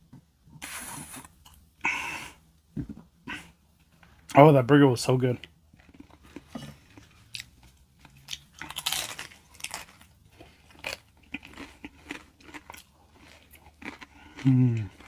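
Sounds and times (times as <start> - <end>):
person chewing crunchy food: 5.6 - 15.0.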